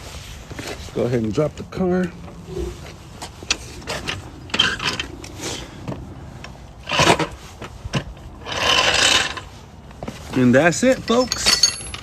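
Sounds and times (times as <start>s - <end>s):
metal tools clicking and scraping: 3.5s - 5.3s, 11.1s - 12.0s
loud scraping clatter: 6.8s - 7.4s, 8.4s - 9.5s.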